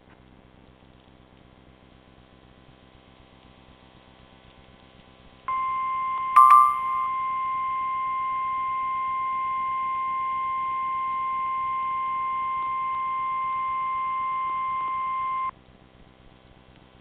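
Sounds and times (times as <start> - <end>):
high-pitched alarm tone: 6.4 - 7.1.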